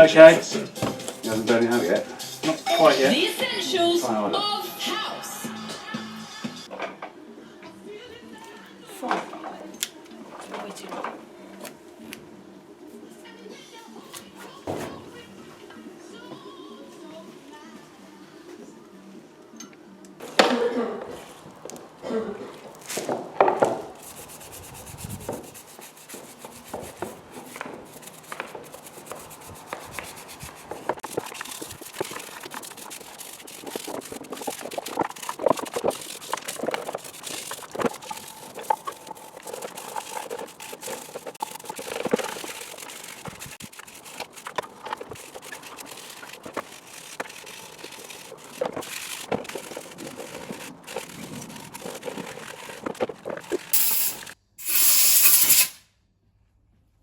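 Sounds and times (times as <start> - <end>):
tools clicking and scraping on metal: 53.8 - 55.8.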